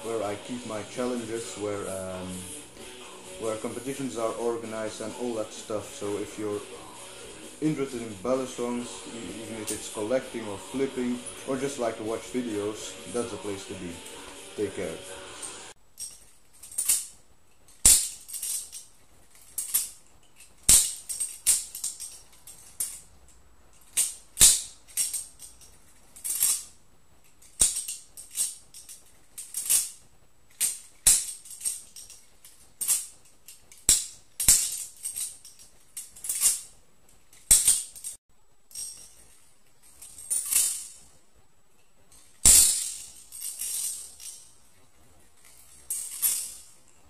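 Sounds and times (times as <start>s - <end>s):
butterfly knife clicking and rattling: 16.0s - 26.7s, 27.3s - 36.7s.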